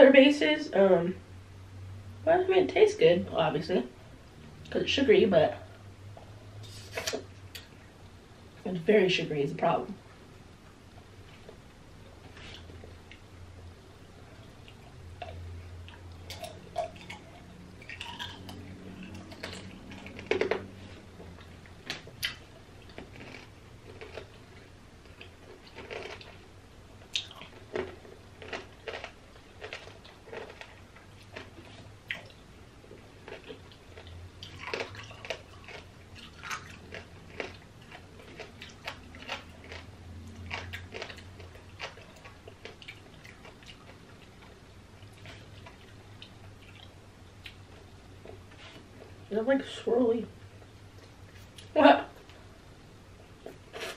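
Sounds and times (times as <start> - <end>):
crunching candied fruit: 14.6 - 32.4, 33.1 - 48.8.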